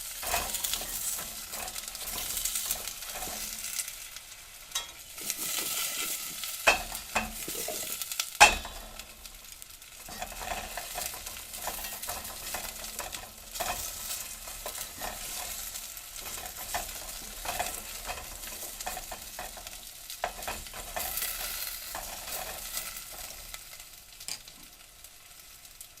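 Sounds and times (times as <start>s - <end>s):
carrots sizzling in hot oil: 0.0s - 26.0s.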